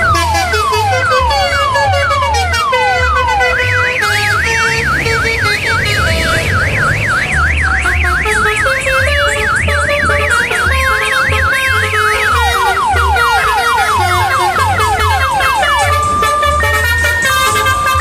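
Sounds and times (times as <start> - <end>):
electronic siren effect: 0.0 - 18.0
music with steady bass beat: 0.0 - 18.0.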